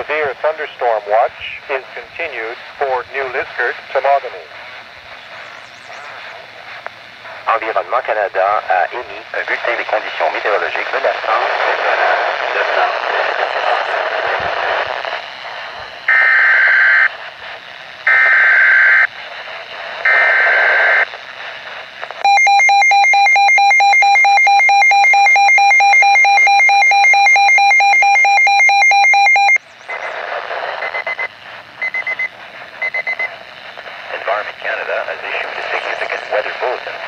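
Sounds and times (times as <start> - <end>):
radio static: 0.0 - 37.0
screeching digital header tones: 22.2 - 30.2
steady attention tone: 22.2 - 30.2.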